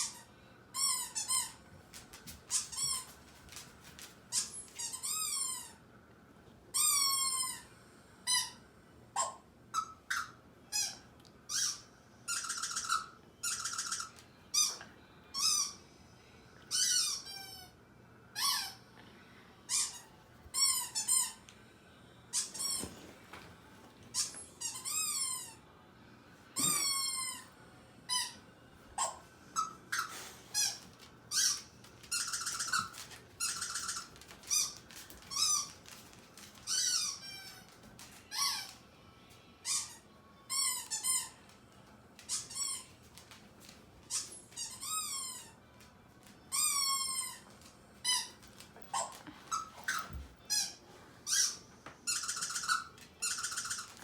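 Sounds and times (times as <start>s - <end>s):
high-pitched squeaks: 29.0s - 35.9s, 46.5s - 54.0s.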